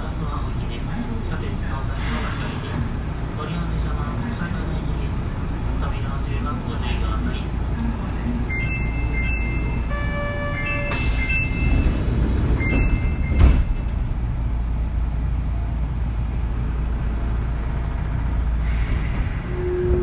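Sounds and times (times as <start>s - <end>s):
low rumble of train equipment: 0.0s - 20.0s.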